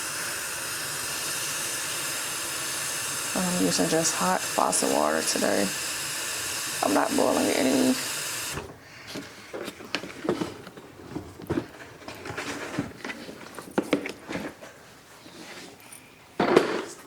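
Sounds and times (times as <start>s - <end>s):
scrape on floor: 15.2s - 15.9s.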